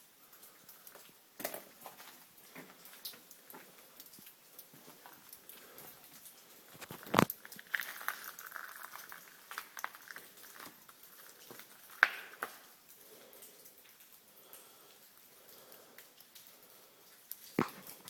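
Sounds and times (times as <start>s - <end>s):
footsteps on loose rock: 6.8s - 9.0s.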